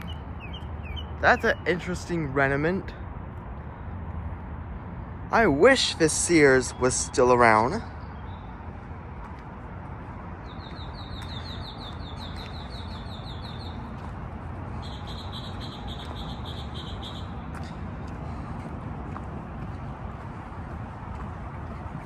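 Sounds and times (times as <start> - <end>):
songbird trilling: 0.0 - 1.6.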